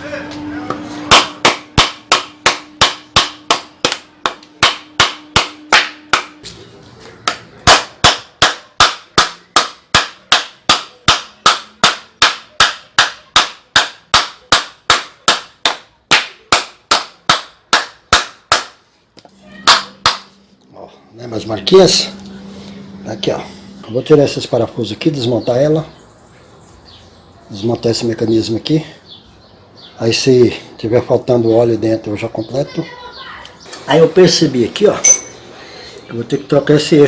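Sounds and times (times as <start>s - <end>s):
hammer knocking on wooden block: 1.1s - 6.4s, 7.3s - 18.8s, 19.7s - 20.3s.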